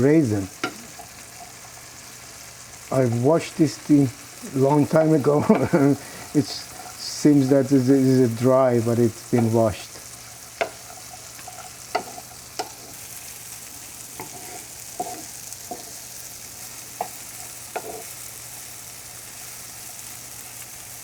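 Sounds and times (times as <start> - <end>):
fruit sizzling in butter: 0.0 - 21.0
utensil scraping a pan: 9.2 - 13.1, 13.8 - 18.3.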